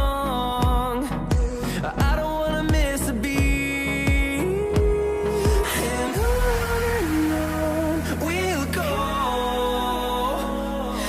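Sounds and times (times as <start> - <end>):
kick drum beat: 0.0 - 6.4
pop song with vocals: 0.0 - 11.0.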